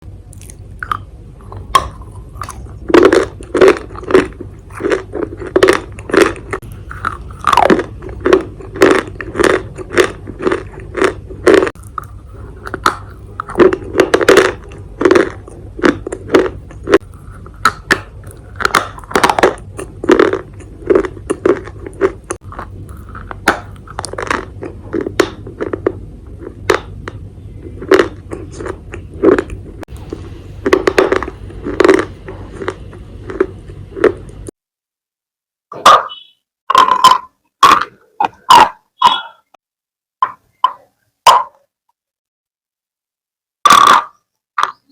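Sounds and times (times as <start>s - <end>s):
person crunching dry clay: 0.2s - 34.4s.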